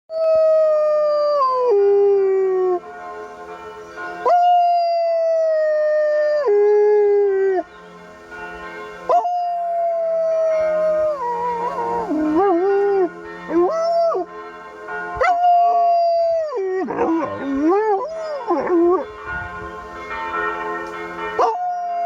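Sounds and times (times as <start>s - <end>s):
faint church bells ringing: 0.8s - 22.0s
dog howling: 9.1s - 14.3s, 15.2s - 19.1s, 21.4s - 22.0s.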